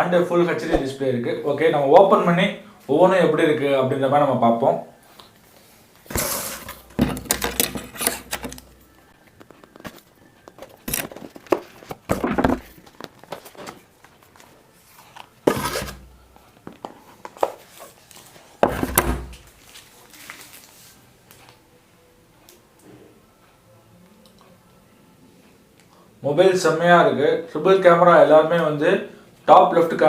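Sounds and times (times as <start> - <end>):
cardboard and plastic packaging handled: 6.0 - 21.5.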